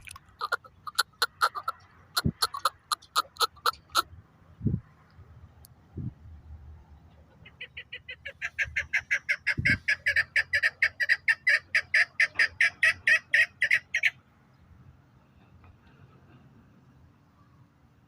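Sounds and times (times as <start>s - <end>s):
partridge calling chuk notes: 0.0s - 4.1s.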